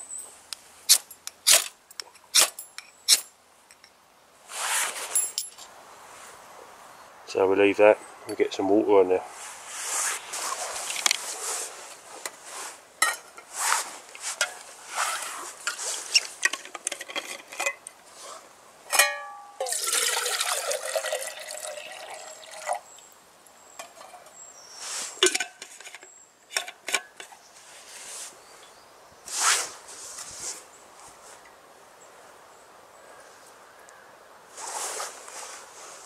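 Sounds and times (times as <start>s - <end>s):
cookware clinking and knocking: 18.9s - 19.8s
water pouring into a pot: 19.6s - 22.9s.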